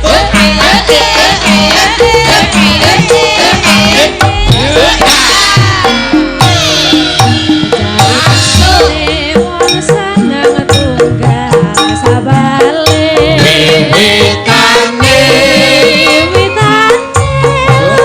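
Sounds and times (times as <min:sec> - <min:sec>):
person singing: 0:00.0 - 0:18.0
gamelan ensemble playing: 0:00.1 - 0:09.9
hand drum strokes: 0:00.2 - 0:14.0.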